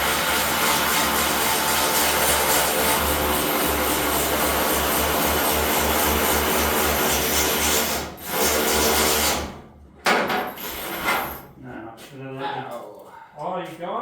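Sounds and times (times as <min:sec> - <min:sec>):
power tool running: 0:00.0 - 0:09.6.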